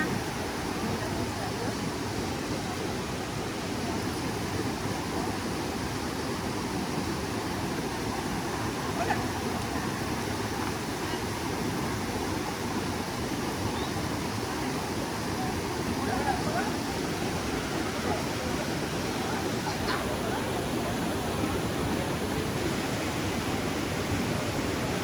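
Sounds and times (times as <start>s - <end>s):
fast-flowing water rushing: 0.0s - 25.0s.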